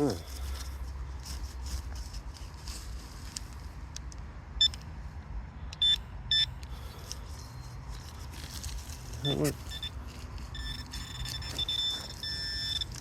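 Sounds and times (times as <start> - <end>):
metal detector beeps: 5.7 - 6.6, 9.2 - 13.0.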